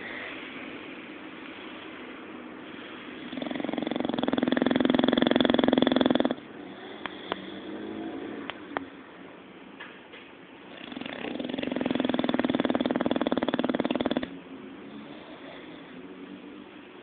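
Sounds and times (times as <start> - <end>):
dog breathing quietly: 0.0 - 7.8
dog snoring with rattle: 3.2 - 8.4, 10.7 - 14.3.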